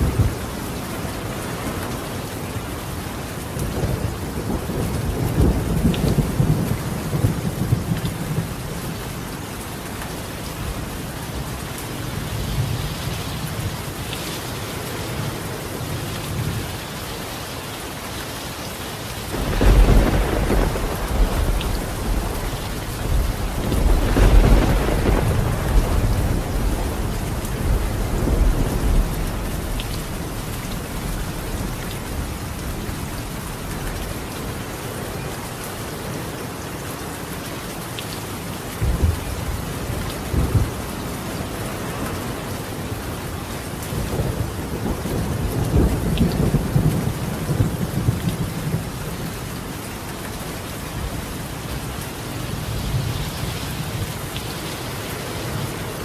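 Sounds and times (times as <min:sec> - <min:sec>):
rain on a tiled roof: 0:00.0 - 0:56.0
sharp thunder jolts: 0:19.2 - 0:32.8
thunder rolling: 0:19.3 - 0:32.4.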